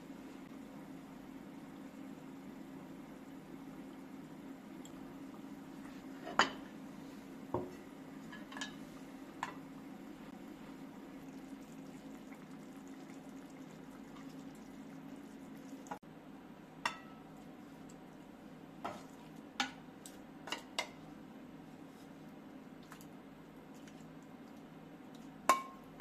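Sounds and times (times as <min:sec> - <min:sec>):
utensils and dishes clinking: 0:08.3 - 0:08.8.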